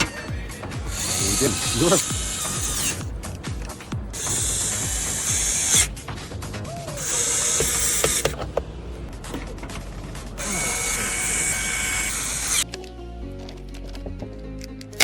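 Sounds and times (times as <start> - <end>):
electric screwdriver whirring: 0.0 - 6.0, 7.0 - 8.5, 10.4 - 12.7.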